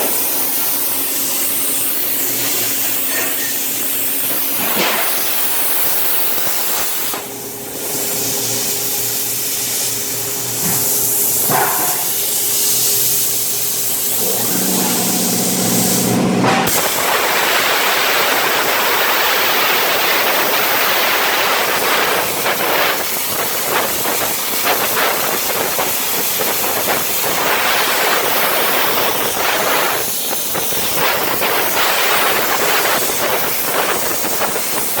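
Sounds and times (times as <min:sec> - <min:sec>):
plasma cutter hissing: 0:00.0 - 0:35.0
multi-tone hum: 0:14.1 - 0:19.1.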